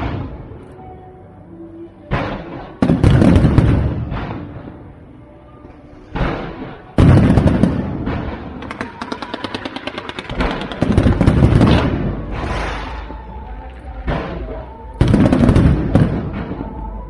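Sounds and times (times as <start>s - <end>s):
loud firework shell bursts: 2.1s - 4.6s, 6.1s - 13.2s
rapid crackling pops: 6.2s - 12.7s.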